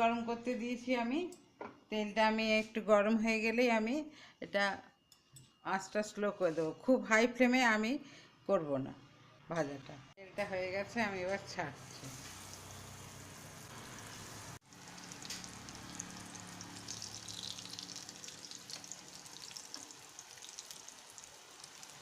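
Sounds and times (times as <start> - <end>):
cutlets sizzling in hot oil: 11.7 - 22.0.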